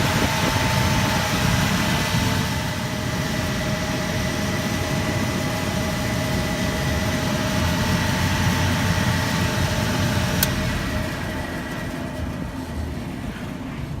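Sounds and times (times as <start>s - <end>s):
air unit rumbling with thin whine: 0.0s - 14.0s
sharp click: 10.4s - 10.6s.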